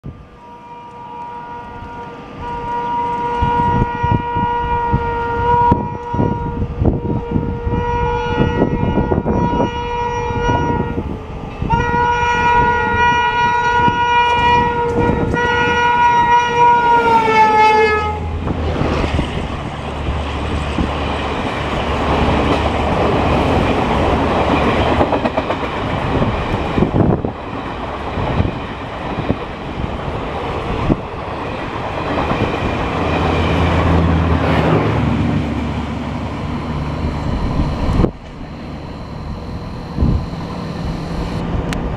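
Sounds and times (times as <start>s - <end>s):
locomotive air horn: 0.1s - 18.5s
train coaches rushing by: 10.6s - 40.7s.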